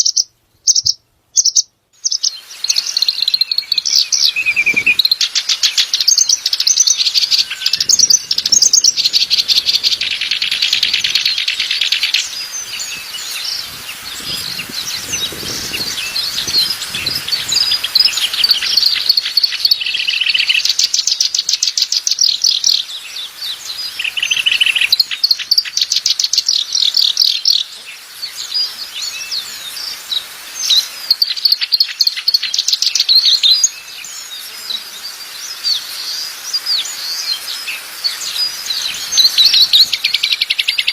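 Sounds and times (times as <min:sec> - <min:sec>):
songbirds trilling and chirping: 0:00.0 - 0:40.9.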